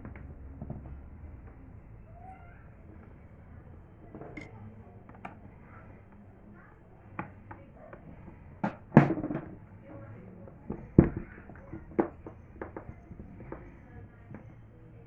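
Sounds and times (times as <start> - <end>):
hard objects clicking and knocking: 4.1 - 5.4.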